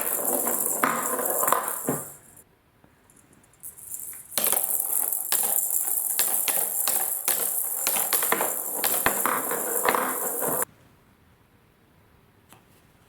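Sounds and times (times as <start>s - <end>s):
marbles clicking: 0.0s - 2.2s, 3.6s - 10.7s
marbles rolling on wooden track: 0.0s - 2.4s, 3.6s - 10.7s.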